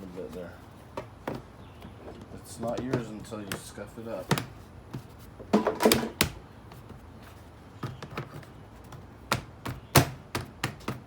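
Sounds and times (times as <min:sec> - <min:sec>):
hard parts tapping and knocking: 0:00.9 - 0:04.5, 0:05.4 - 0:06.3.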